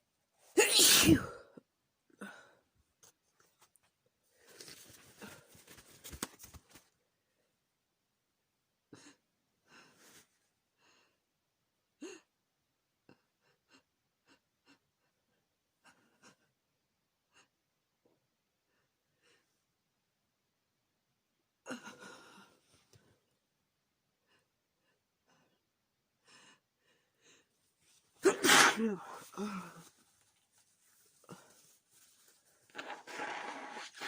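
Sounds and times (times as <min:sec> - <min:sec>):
person sniffing: 0:28.2 - 0:30.0.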